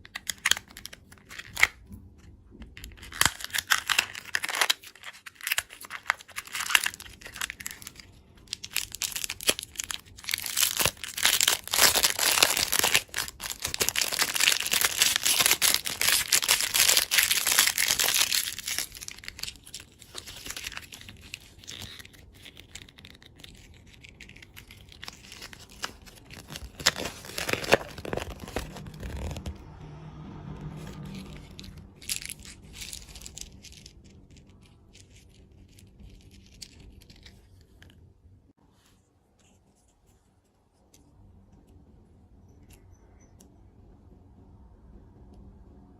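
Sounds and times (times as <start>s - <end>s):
plastic wrappers crinkling: 0.0s - 1.8s, 2.7s - 29.6s, 31.3s - 37.9s.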